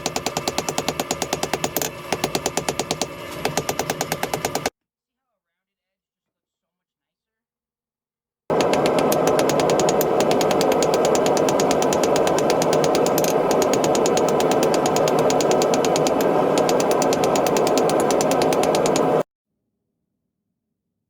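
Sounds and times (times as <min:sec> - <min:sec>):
machine humming: 0:08.5 - 0:19.2
rapid regular ticking: 0:08.5 - 0:19.2.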